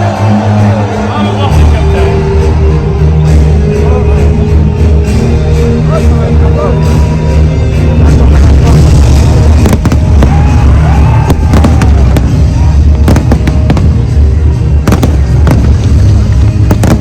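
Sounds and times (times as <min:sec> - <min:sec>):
loud music with heavy bass: 0:00.0 - 0:17.0
fireworks bangs and cracks: 0:08.6 - 0:17.0.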